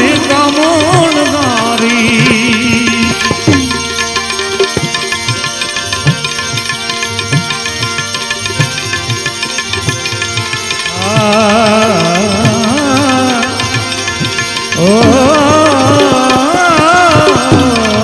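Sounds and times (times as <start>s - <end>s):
person singing: 0.0s - 3.8s, 10.9s - 18.0s
tabla playing a steady rhythm: 0.0s - 18.0s.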